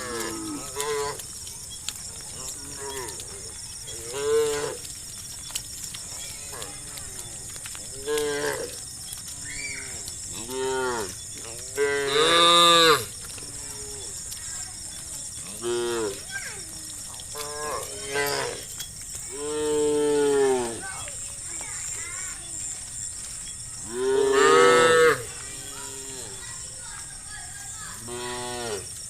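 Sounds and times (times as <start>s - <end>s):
cattle mooing: 0.0s - 1.2s, 10.4s - 14.2s, 15.4s - 16.2s, 17.3s - 20.8s, 23.8s - 26.4s.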